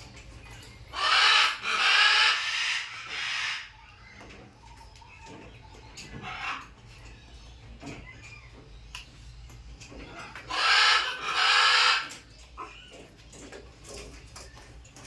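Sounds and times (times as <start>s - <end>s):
macaw screeching: 10.5s - 12.1s.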